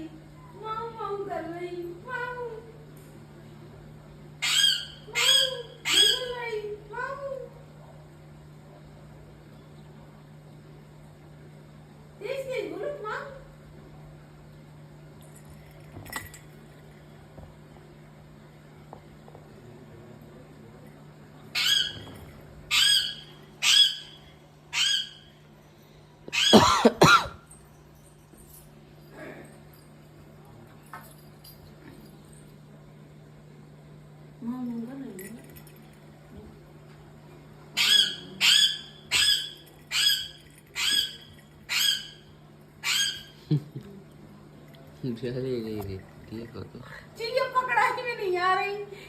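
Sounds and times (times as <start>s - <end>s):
animal harsh call: 22.7s - 25.3s, 26.3s - 27.3s, 37.8s - 43.4s.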